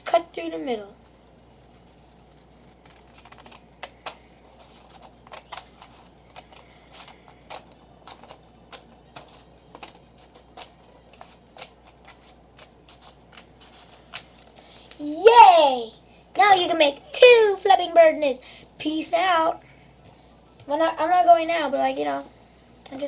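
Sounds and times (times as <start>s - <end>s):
scissors snipping paper: 2.3s - 14.4s.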